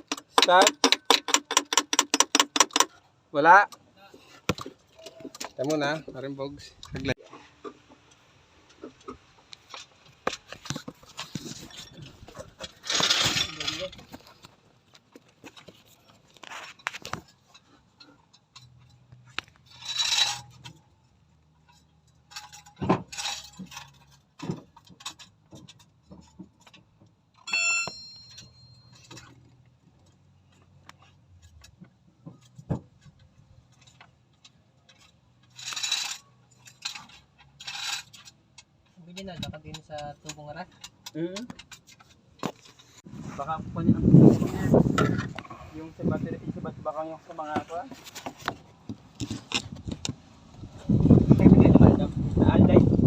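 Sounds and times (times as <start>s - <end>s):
hand tools clinking on metal: 0.0s - 3.1s, 11.6s - 14.2s, 17.1s - 31.8s, 32.4s - 43.0s
ringing metallic clang: 27.4s - 29.2s.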